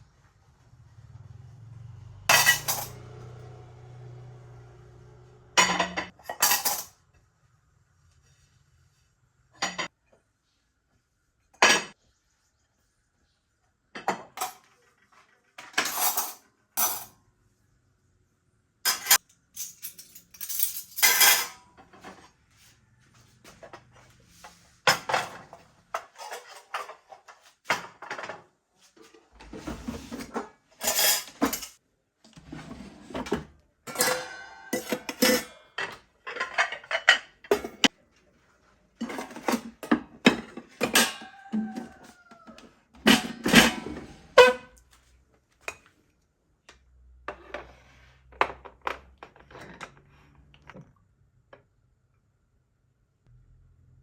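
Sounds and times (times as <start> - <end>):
dishes and cutlery clinking: 2.3 - 3.1, 18.9 - 22.3, 24.9 - 28.4, 33.9 - 38.0, 39.0 - 42.0.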